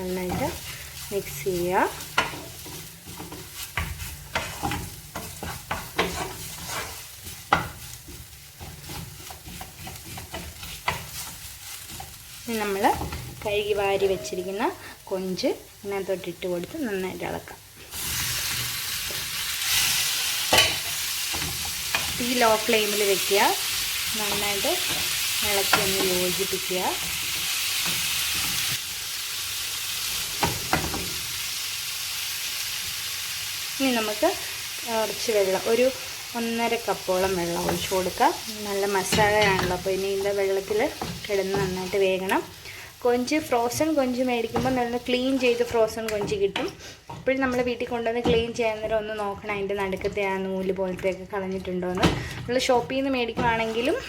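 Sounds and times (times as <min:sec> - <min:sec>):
light sizzle of frying: 0:00.0 - 0:54.0
spoon scraping a pan: 0:01.9 - 0:14.8, 0:17.9 - 0:28.8.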